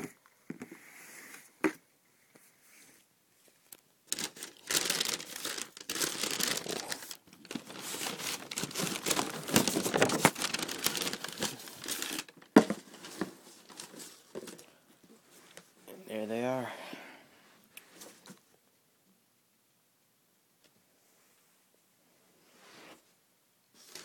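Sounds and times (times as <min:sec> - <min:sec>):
paper rustling: 0:04.1 - 0:14.7, 0:23.8 - 0:24.0.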